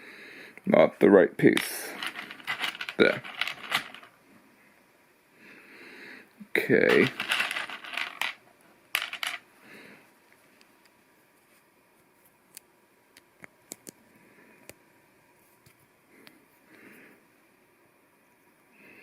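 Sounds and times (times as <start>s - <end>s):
plastic pieces clicking and clattering: 1.6s - 4.1s, 6.9s - 9.4s.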